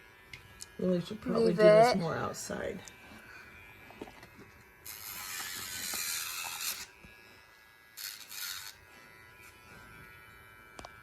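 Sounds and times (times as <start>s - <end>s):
pet nail grinder motor whine: 0.0s - 11.0s
grinding wheel rasping on nail: 4.0s - 7.0s, 8.0s - 8.8s.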